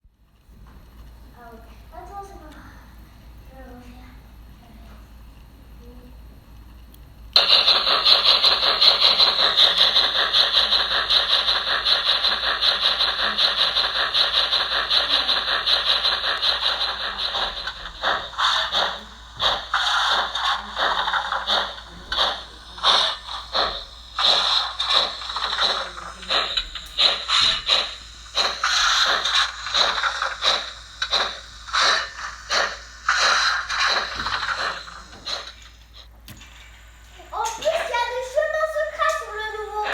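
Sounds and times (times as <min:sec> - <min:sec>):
locomotive engine sounds from speakers: 0:07.3 - 0:36.7.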